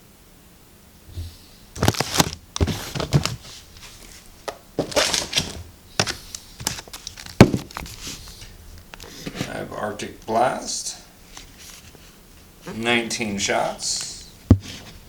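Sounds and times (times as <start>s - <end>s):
handling knocks and clicks: 1.8s - 8.1s.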